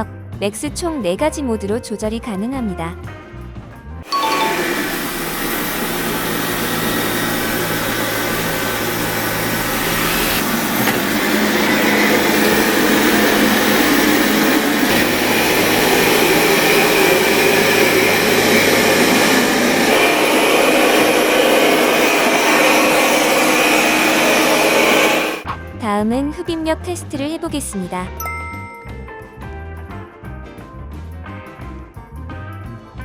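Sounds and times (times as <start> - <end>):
robot vacuum suction fan whirring: 4.1 - 25.5.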